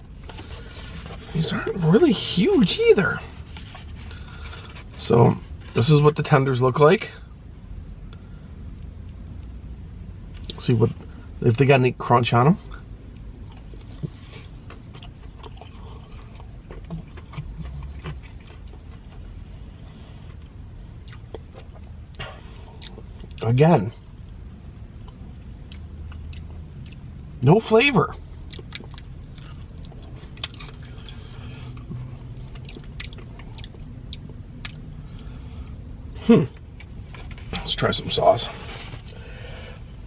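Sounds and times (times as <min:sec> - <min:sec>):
man chewing crispy food: 0:00.0 - 0:02.6, 0:12.8 - 0:23.4, 0:24.0 - 0:27.2, 0:28.2 - 0:35.9, 0:38.5 - 0:40.0
steady low hum: 0:00.0 - 0:40.0.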